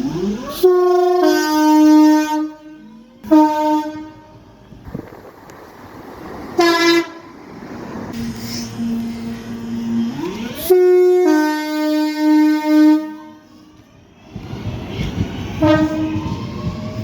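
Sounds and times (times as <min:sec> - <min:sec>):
train rumbling past: 0:00.0 - 0:17.0
train horn blast: 0:00.5 - 0:04.5, 0:06.6 - 0:07.4, 0:08.2 - 0:13.9, 0:15.5 - 0:16.4.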